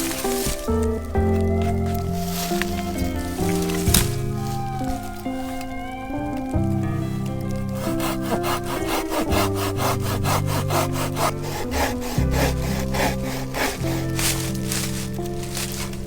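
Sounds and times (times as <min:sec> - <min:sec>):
background music: 0:00.0 - 0:16.0
hand saw cutting wood: 0:07.8 - 0:16.0.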